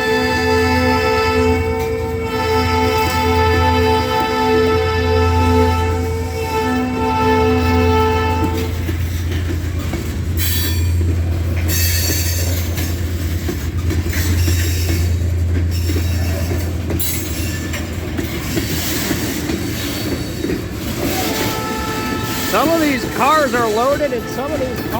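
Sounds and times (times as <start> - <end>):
locomotive horn: 0.0 - 9.5, 20.8 - 24.9
train wheels rumbling on rail: 0.0 - 24.9
wheel squeal: 18.4 - 21.5.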